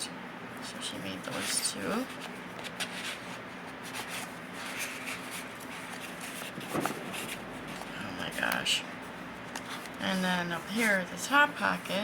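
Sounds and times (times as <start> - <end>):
paper rustling and sliding: 1.3 - 8.7.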